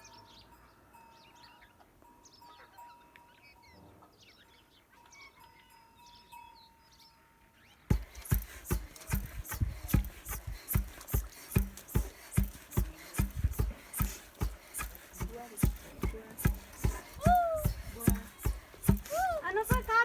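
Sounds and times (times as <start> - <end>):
faint birds chirping: 0.0 - 20.0
loud rhythmic thuds: 7.9 - 20.0
steady thin hum: 7.9 - 20.0.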